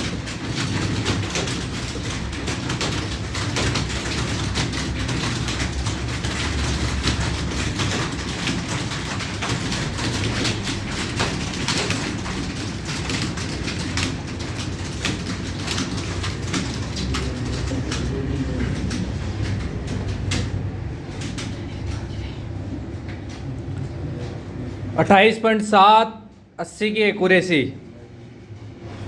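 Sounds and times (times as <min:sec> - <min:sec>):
keyboard typing clicks: 0:00.0 - 0:22.2.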